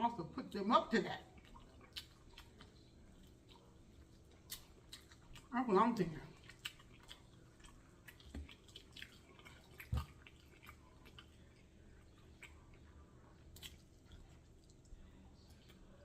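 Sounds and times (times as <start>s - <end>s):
faint chewing: 0.4s - 16.0s
wet mouth clicks: 1.4s - 2.7s, 4.4s - 5.5s, 6.4s - 7.4s.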